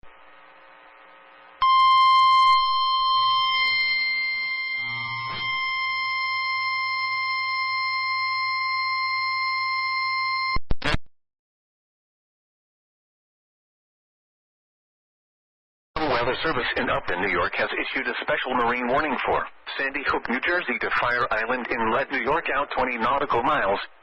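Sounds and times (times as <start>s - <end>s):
shrill alarm beep: 1.6s - 10.6s
faint radio hiss: 16.0s - 24.0s.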